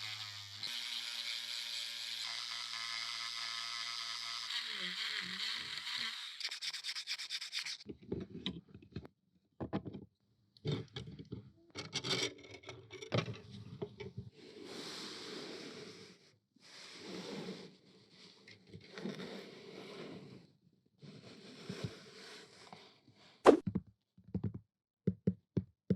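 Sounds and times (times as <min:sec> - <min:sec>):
sharp knock: 0:23.5 - 0:23.7.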